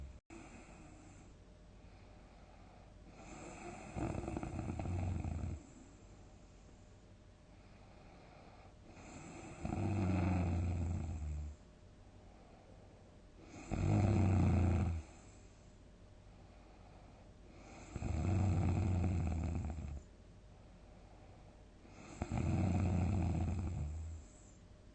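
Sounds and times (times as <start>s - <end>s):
person snoring deeply: 3.2s - 5.6s, 8.9s - 11.6s, 13.5s - 15.1s, 17.6s - 20.0s, 21.9s - 24.2s.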